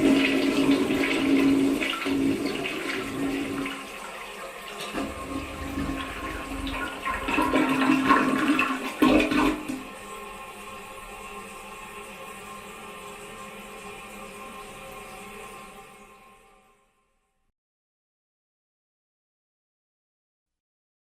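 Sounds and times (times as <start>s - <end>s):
toilet flushing: 0.0s - 16.4s.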